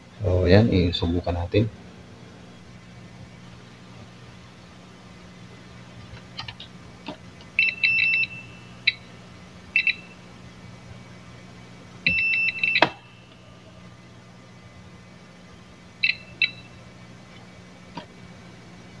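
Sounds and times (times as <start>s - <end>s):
multimeter continuity buzzer beeping: 7.6s - 10.3s, 12.0s - 13.7s, 16.0s - 16.9s.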